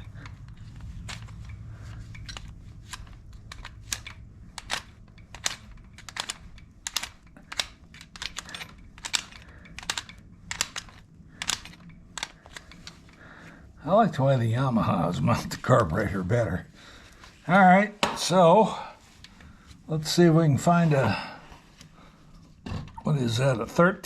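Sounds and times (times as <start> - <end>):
hand tools clicking: 0.0 - 13.2.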